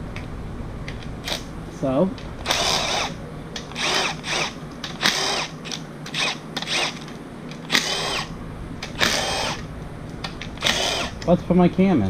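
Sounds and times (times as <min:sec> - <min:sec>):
power drill whining in bursts: 0:02.4 - 0:07.1, 0:07.7 - 0:09.7, 0:10.6 - 0:11.3.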